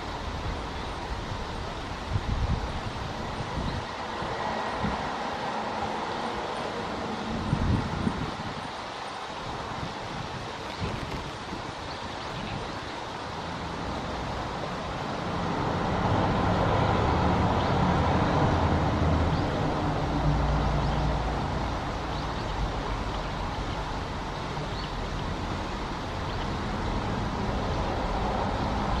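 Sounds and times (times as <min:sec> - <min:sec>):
road traffic: 0:00.0 - 0:29.0
vehicle engine passing: 0:15.2 - 0:22.1.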